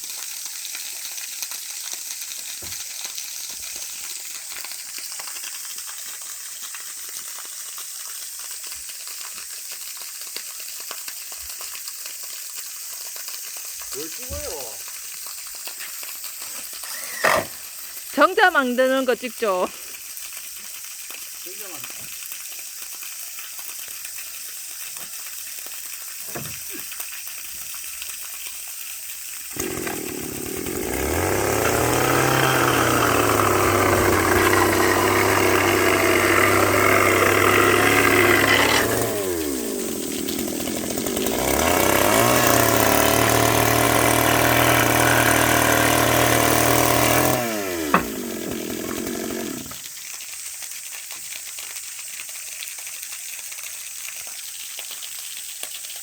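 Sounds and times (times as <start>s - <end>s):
power saw running: 16.8s - 19.7s, 29.6s - 49.8s.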